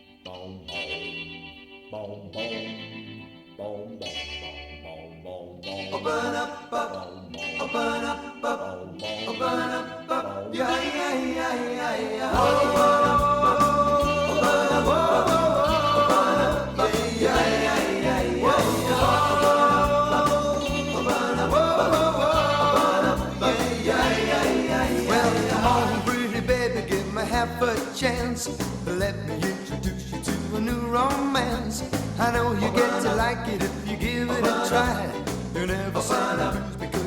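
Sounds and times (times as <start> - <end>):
wordless vocal harmony: 0.2 - 28.2, 32.2 - 37.0
rock and roll band playing: 12.3 - 37.0.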